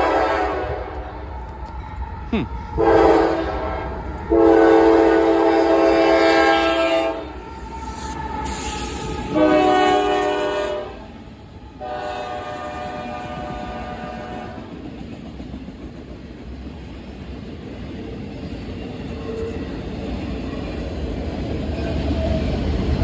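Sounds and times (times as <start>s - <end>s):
locomotive air horn blasts: 0.0s - 1.1s, 2.8s - 7.4s, 8.0s - 11.1s, 11.8s - 14.6s.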